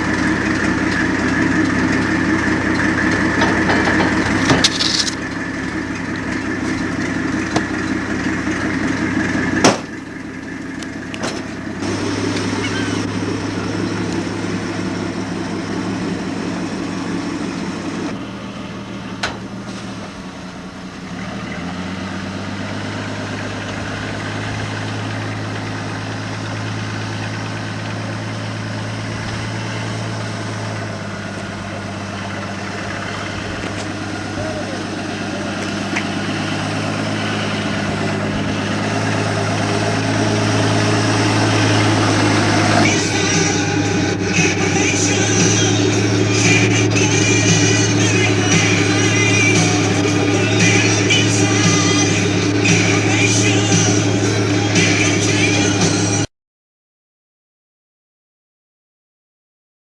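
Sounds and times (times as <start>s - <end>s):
boat engine running: 0.0s - 56.3s
sharp knock: 9.6s - 9.9s.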